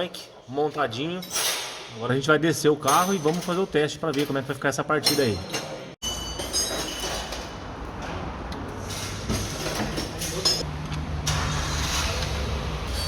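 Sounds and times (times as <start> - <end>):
vehicle lift mechanical hum: 7.2 - 13.0.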